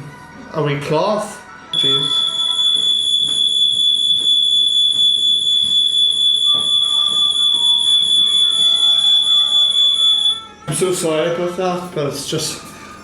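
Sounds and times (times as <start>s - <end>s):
smoke alarm high-pitched tone: 1.7s - 10.4s.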